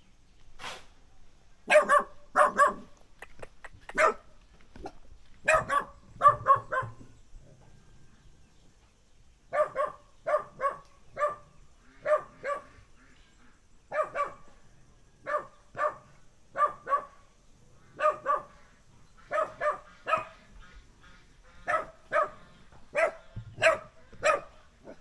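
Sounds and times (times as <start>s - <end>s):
dog barking: 1.7s - 7.2s, 9.5s - 12.8s, 13.9s - 14.5s, 15.2s - 17.2s, 18.0s - 20.5s, 21.6s - 25.0s.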